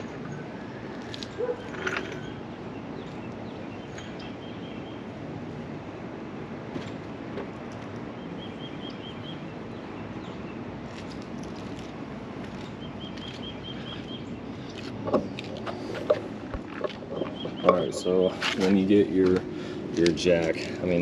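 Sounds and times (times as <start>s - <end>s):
high bird chirps: 17.1s - 18.1s.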